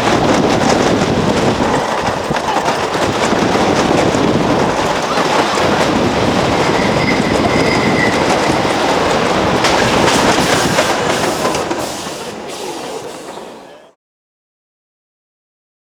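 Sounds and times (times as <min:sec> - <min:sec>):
roller coaster rattling on wooden track: 0:00.0 - 0:14.0
high wheel squeal: 0:04.8 - 0:13.9.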